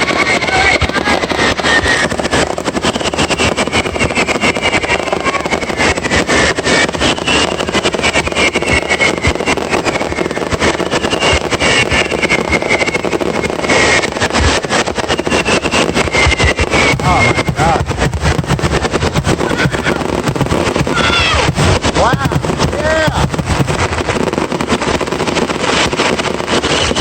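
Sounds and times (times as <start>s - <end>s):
fireworks crackling and popping: 0.0s - 27.0s
high whistle: 2.9s - 6.0s, 6.6s - 14.1s, 15.0s - 17.8s, 26.6s - 27.0s.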